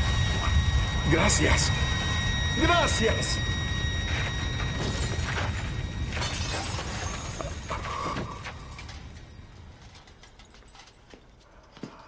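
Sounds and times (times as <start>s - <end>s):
cracking and breaking: 3.4s - 11.2s.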